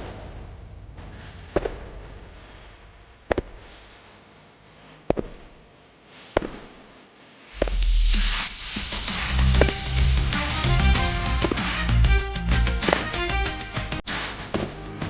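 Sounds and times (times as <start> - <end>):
hiss: 6.1 - 10.6.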